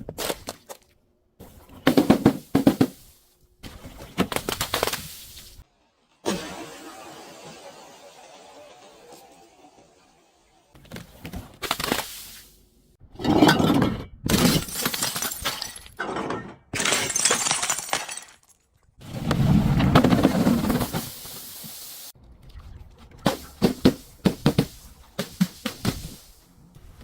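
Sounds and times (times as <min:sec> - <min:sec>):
glass breaking: 0:14.3 - 0:16.0, 0:16.7 - 0:18.6.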